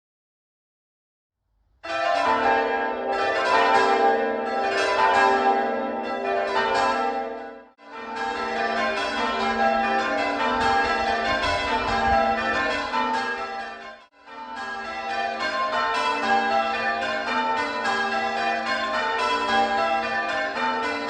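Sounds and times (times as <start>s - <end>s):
church bells ringing: 1.8s - 21.0s.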